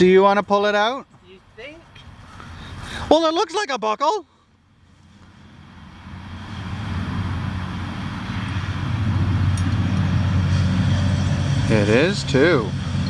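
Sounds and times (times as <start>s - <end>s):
engine humming: 4.7s - 13.0s.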